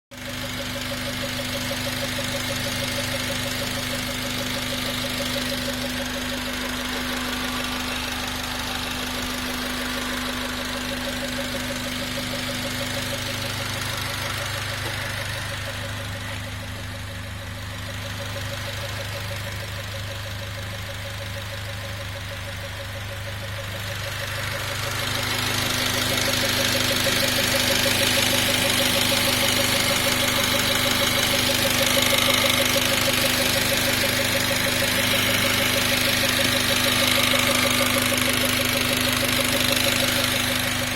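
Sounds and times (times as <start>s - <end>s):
car engine running: 0.1s - 40.9s.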